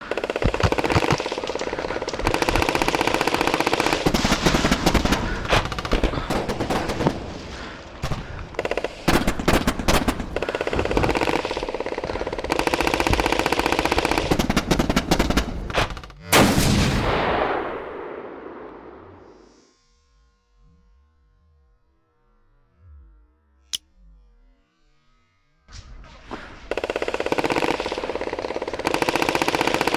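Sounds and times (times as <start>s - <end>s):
airsoft guns firing on full auto: 0.0s - 16.8s, 26.7s - 29.9s.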